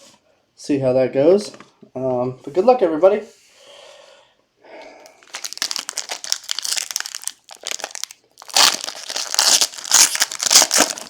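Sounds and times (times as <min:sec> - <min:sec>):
plastic packaging crinkling: 0:05.1 - 0:11.0.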